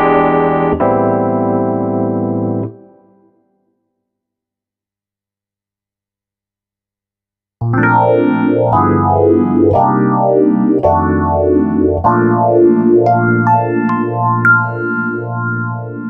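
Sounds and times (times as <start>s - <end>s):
electric piano chords: 0.0s - 2.9s, 7.6s - 16.0s.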